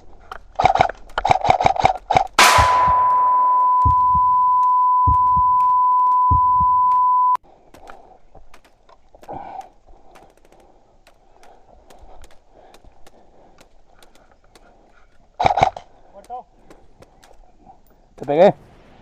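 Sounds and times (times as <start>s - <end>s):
low thuds: 2.4s - 7.3s
high electronic beep: 2.4s - 7.4s
faint clicks: 7.6s - 18.4s.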